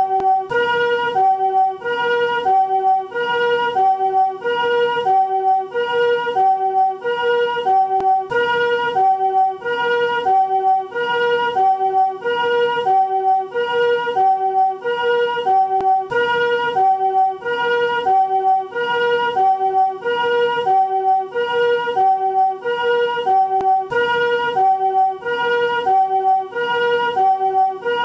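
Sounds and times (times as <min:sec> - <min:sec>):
ambulance two-tone siren: 0:00.0 - 0:28.0.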